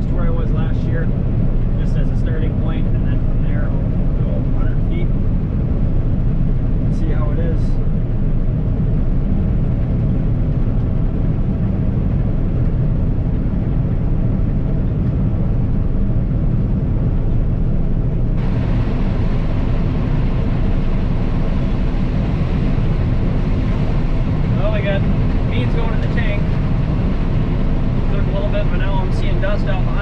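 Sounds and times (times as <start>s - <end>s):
combine harvester drone: 0.0s - 30.0s.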